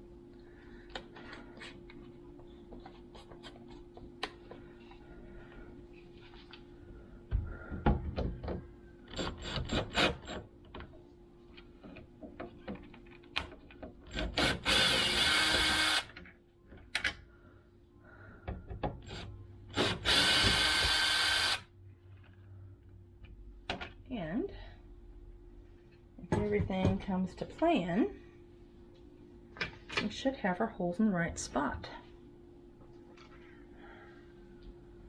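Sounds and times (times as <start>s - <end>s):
power drill running: 14.4s - 16.1s, 19.8s - 21.6s.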